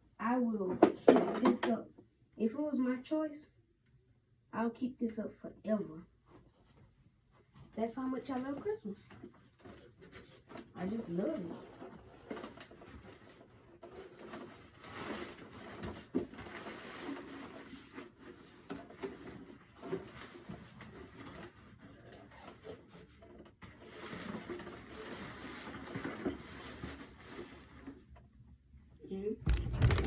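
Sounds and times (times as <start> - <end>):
plastic clicks and knocks: 29.4 - 30.0
rustling: 29.4 - 30.0.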